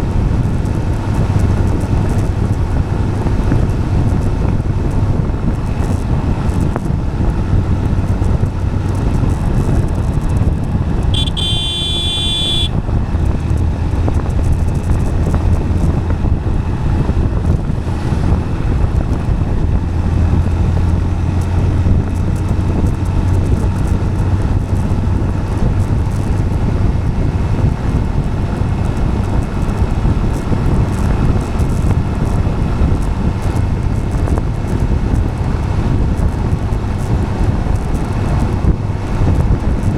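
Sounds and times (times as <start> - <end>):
low vehicle drone: 0.0 - 39.9
tyre and wind noise: 0.0 - 39.9
short high-pitched tone: 11.2 - 12.7.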